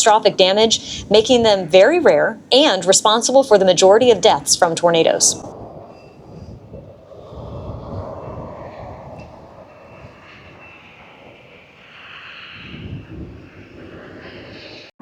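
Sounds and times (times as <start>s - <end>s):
low rumbling noise: 0.0s - 15.0s.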